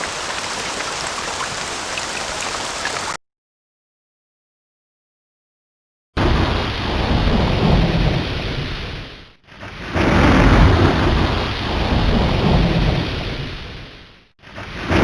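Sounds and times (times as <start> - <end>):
heavy rain: 0.0 - 3.2, 6.2 - 15.0
thunder rumbling: 6.2 - 13.9, 14.6 - 15.0.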